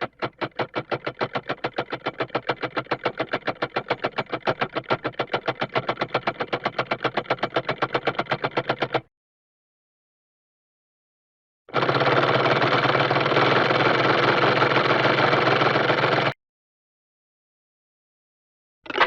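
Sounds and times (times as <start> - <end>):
small engine putt-putting: 0.0 - 9.1, 11.7 - 16.4.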